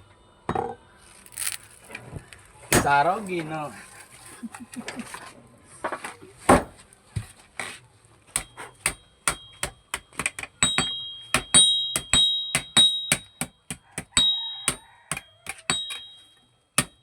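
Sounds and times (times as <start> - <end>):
hammer striking iron on anvil: 2.7 - 3.2, 8.3 - 17.0
high anvil ring: 8.4 - 17.0.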